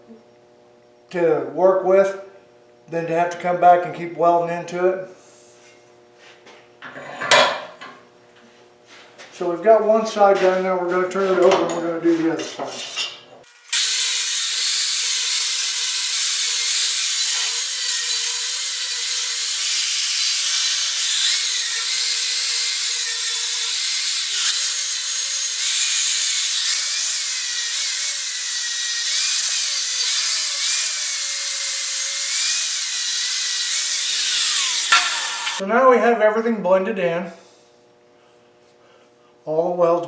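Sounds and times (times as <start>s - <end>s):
electric grinder grinding metal: 13.5s - 35.6s.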